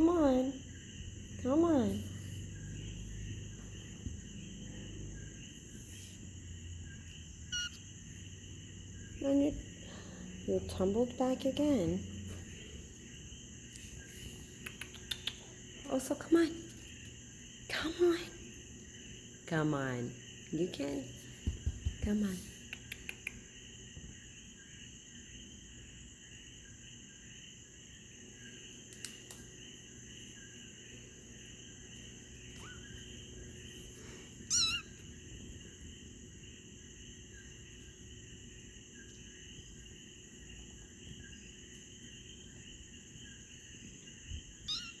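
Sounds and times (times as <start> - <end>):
kitten mewing: 7.5 - 7.8, 34.5 - 35.0, 44.7 - 45.0.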